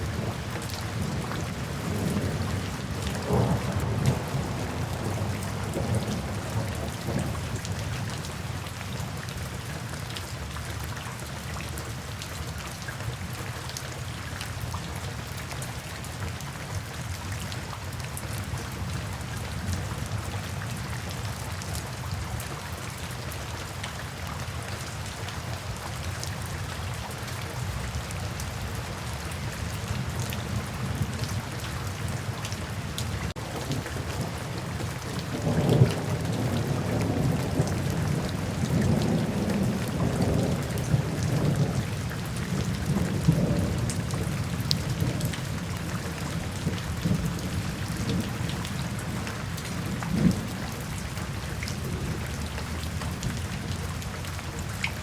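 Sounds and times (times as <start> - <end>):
thunder rumbling: 0.0 - 7.6, 33.4 - 45.4
steady rain: 0.0 - 55.0.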